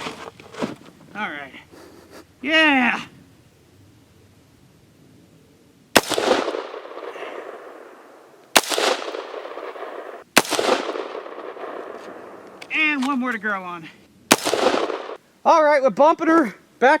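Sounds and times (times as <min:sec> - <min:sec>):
rifle shots with echo: 0:06.0 - 0:12.5, 0:14.3 - 0:15.2.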